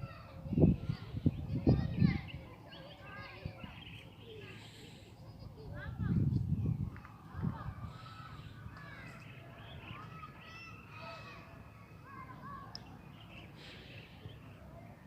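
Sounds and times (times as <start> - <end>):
birds chirping: 0.1 - 5.6, 6.7 - 15.0.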